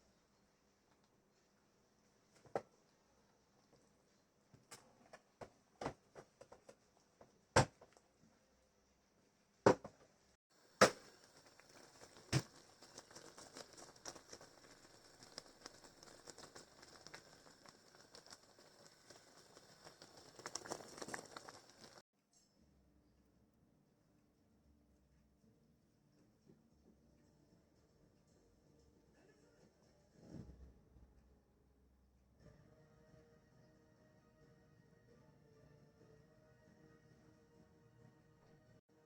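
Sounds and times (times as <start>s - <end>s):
steady crackling: 10.8s - 22.0s.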